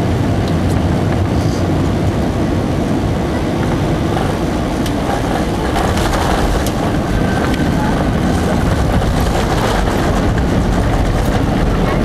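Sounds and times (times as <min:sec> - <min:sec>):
airliner cabin rumble: 0:00.0 - 0:12.0
faint rattles: 0:03.6 - 0:12.0.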